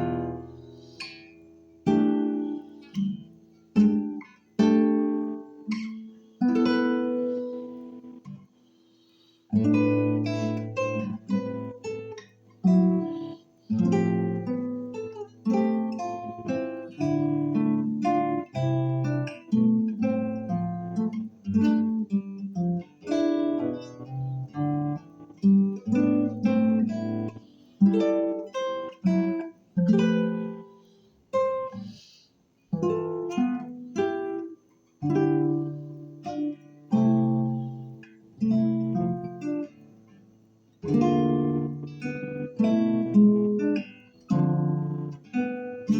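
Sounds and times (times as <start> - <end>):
acoustic guitar plucking: 0.0 - 45.9.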